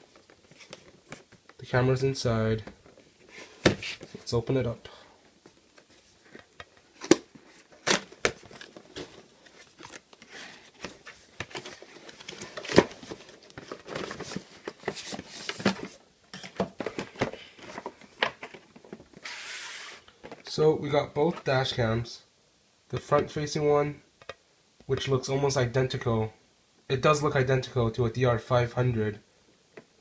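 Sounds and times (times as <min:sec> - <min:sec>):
packaging clicks and crinkling: 0:05.8 - 0:20.5
short hiss: 0:19.2 - 0:20.1.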